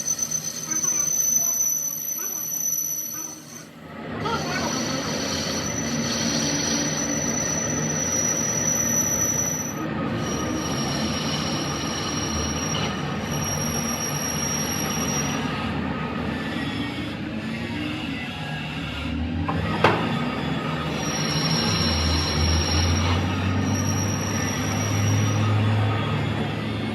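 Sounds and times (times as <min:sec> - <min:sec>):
power tool grinding steel: 0:00.0 - 0:15.5, 0:20.2 - 0:25.6.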